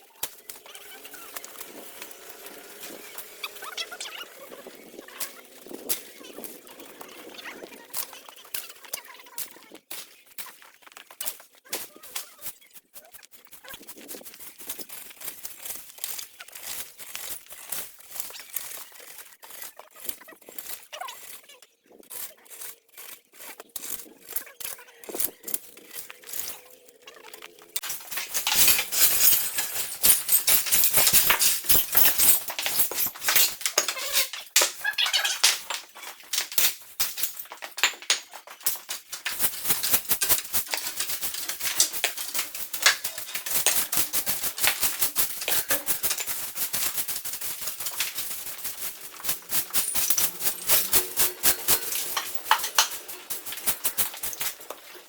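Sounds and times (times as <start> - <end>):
scraping and rustling: 10.4 - 55.0.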